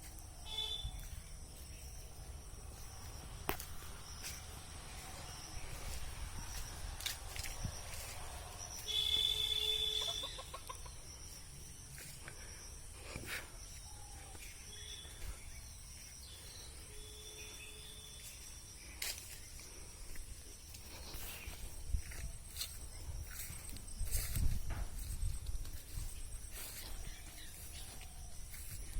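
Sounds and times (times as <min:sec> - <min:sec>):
chicken calling: 0:08.9 - 0:11.1.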